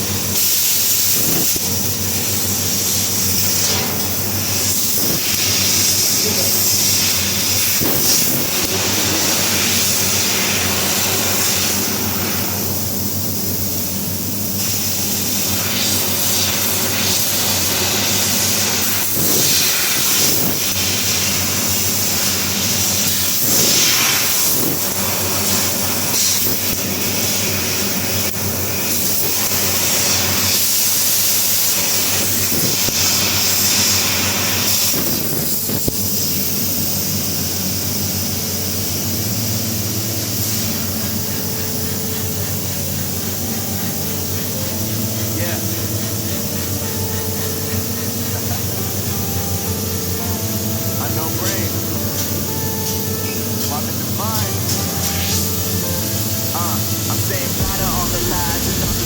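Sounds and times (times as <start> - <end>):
laser cutting head hissing: 0.0 - 59.0
low machine hum: 39.2 - 59.0.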